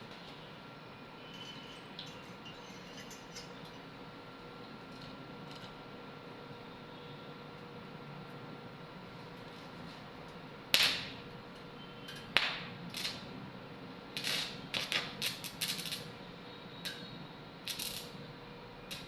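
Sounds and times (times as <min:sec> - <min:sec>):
welding crackling: 0:12.4 - 0:13.3, 0:14.2 - 0:16.1, 0:17.7 - 0:18.1.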